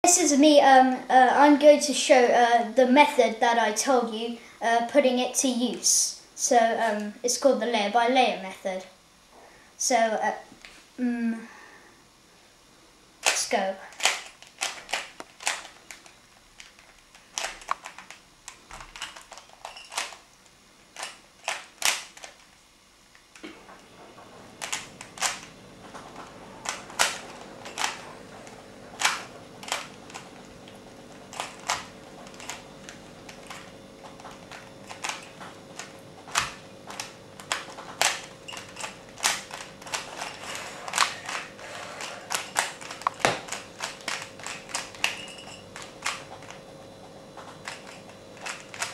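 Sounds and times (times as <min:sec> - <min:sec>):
faint steady hum: 0:00.0 - 0:48.9
puzzle cube plastic clicks: 0:13.2 - 0:22.6, 0:24.6 - 0:46.6, 0:47.4 - 0:48.9.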